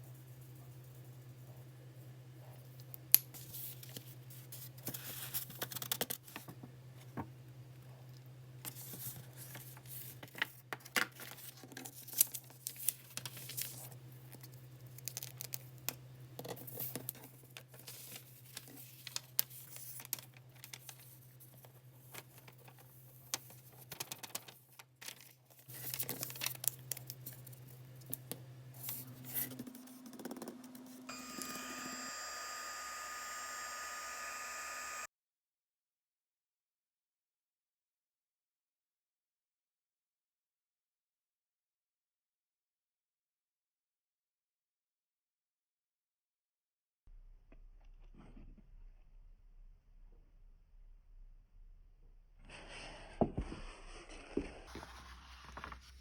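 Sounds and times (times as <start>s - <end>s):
paper rustling and crinkling: 8.7s - 14.0s, 16.6s - 28.2s, 52.5s - 56.0s.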